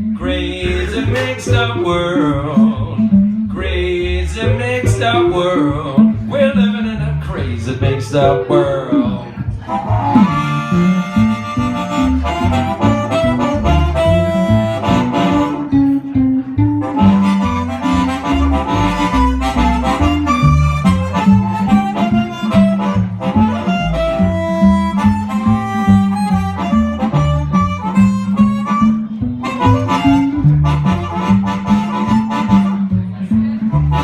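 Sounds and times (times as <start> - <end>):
blues band playing: 0.0 - 34.0
harmonica solo: 8.3 - 34.0.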